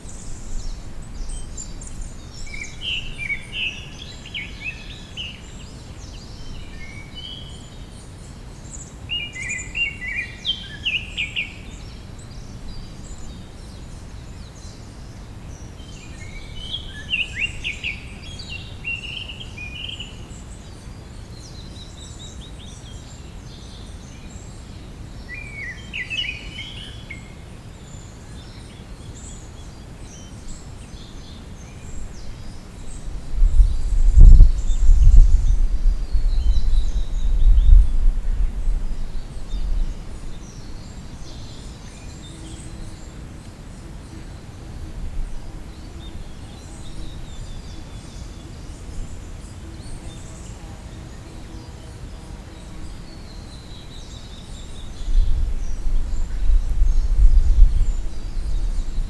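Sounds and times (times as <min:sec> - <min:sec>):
songbirds chirping: 0:00.0 - 0:59.0
low background rumble: 0:32.0 - 0:41.5.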